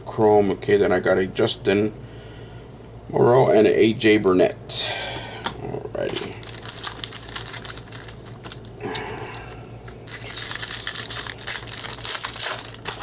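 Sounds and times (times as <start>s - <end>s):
foil wrapper crinkling and tearing: 6.0s - 8.8s, 9.8s - 13.0s.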